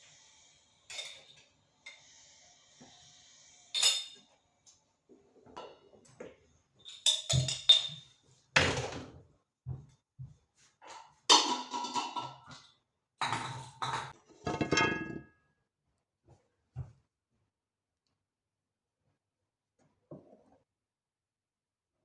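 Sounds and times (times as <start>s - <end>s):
household items clinking and knocking: 6.8s - 9.0s, 13.2s - 15.4s.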